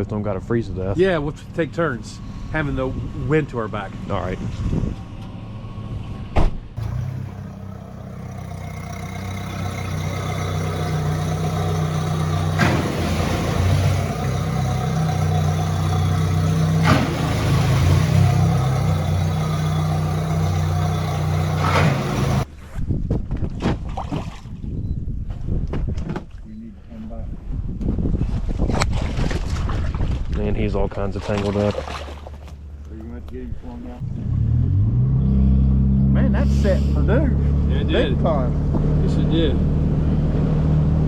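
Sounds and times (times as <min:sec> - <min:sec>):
boat motor running: 0:00.0 - 0:22.5, 0:30.9 - 0:41.0.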